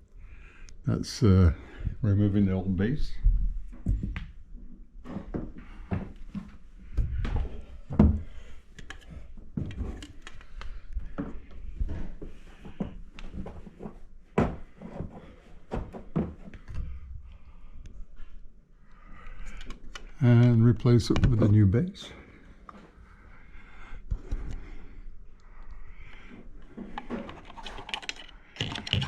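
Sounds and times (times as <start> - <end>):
plastic bases knocking and clicking: 26.9 - 29.0.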